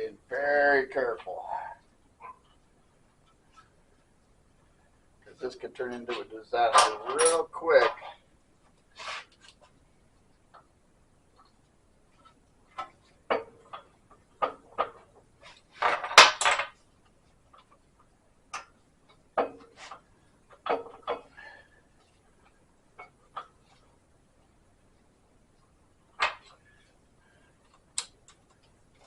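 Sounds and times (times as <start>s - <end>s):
metal parts clinking: 6.7s - 7.6s.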